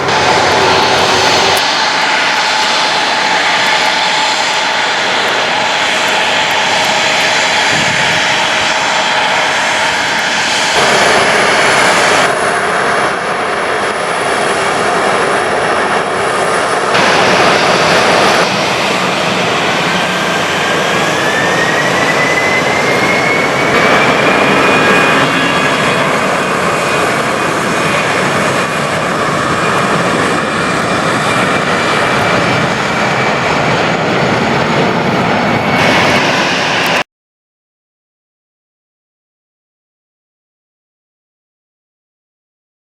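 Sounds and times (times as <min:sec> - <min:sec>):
jet engines running loudly: 0:00.0 - 0:37.0
rising engine whine: 0:00.0 - 0:37.0.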